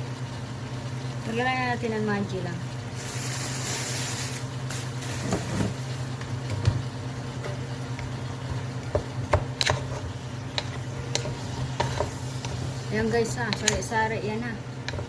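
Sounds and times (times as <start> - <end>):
utensils knocking against a pot: 8.9 - 13.9.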